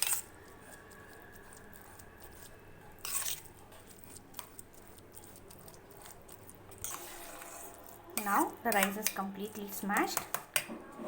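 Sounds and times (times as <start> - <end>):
spoon scraping bowl: 0.0 - 10.3
spoon mashing soft food: 0.0 - 10.8.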